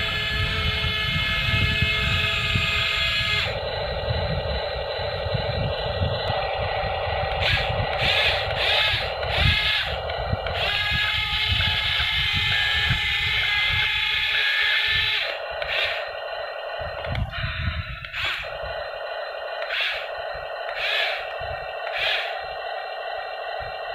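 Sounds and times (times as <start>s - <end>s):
low rumble: 0.0s - 23.9s
toy electric motors whining: 0.0s - 23.9s.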